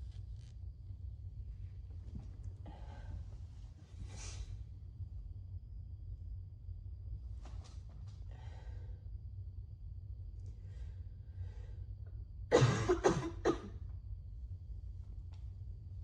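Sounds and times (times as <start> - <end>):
faint breaths: 2.6 - 4.8, 8.1 - 9.3, 10.4 - 12.2
person coughing: 12.5 - 13.8.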